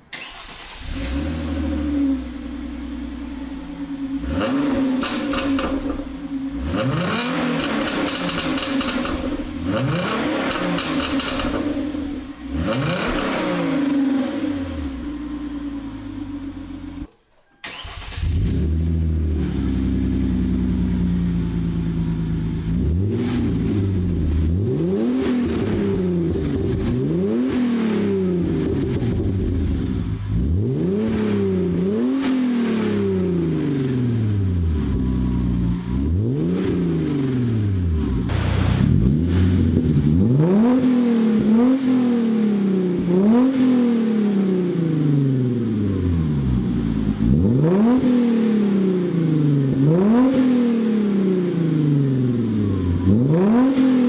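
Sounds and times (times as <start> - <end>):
car engine revving: 0.0 - 17.1, 17.7 - 54.0.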